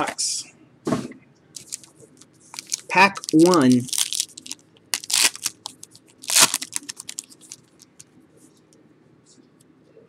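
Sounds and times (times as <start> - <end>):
cards clicking and rustling: 1.6 - 1.9, 2.6 - 8.1
foil wrapper tearing and crinkling: 1.6 - 1.9, 2.5 - 8.0.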